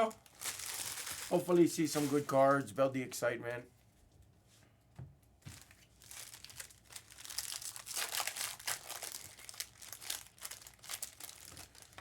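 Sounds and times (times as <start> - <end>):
wrappers crinkling and tearing: 0.0 - 2.8, 5.5 - 12.0.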